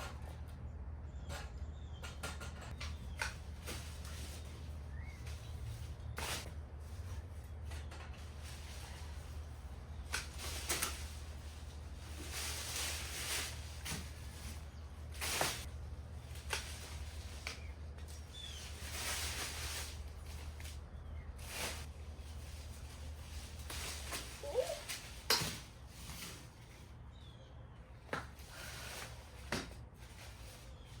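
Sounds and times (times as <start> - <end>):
leaves rustling: 2.9 - 7.6, 8.2 - 27.0
pruning shears snipping branches: 9.8 - 11.3, 15.4 - 18.1.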